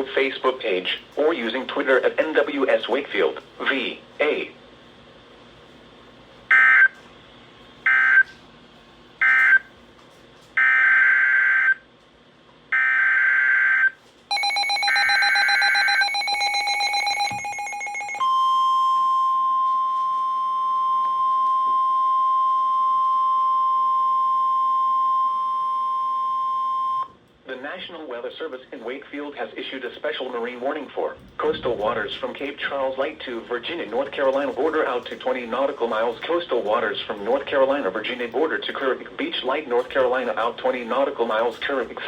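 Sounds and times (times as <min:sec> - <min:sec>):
steady warning alarm tone: 0:07.9 - 0:08.3, 0:12.7 - 0:27.1.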